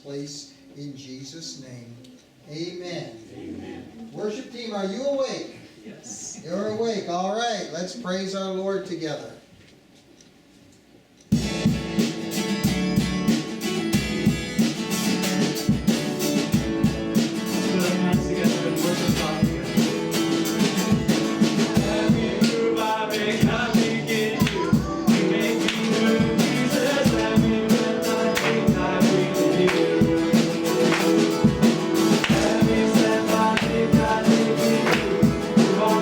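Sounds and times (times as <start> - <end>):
drums keeping a steady beat: 11.3 - 36.0
guitar: 11.3 - 36.0
worship band playing: 11.3 - 36.0.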